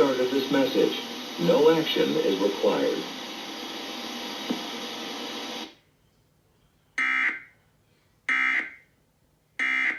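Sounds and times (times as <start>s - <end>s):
steady hiss: 0.0s - 5.8s.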